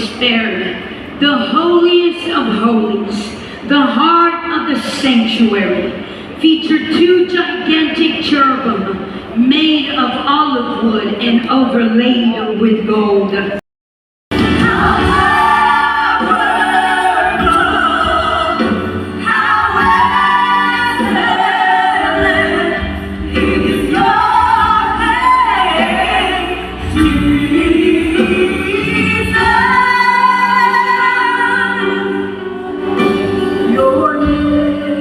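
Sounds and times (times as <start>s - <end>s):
singer breathing: 6.0s - 6.4s
woman singing with choir: 14.4s - 35.0s.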